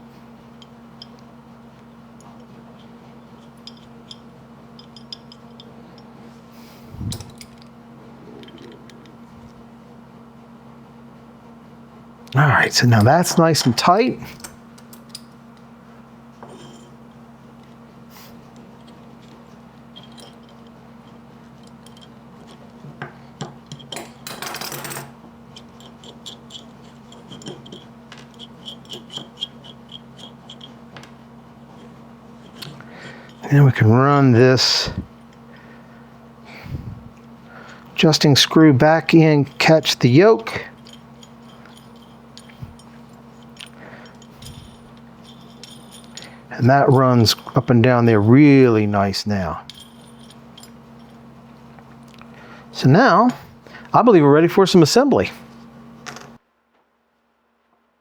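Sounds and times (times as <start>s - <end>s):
steady low hum: 0.0s - 56.4s
small metal parts clicking: 40.4s - 47.8s.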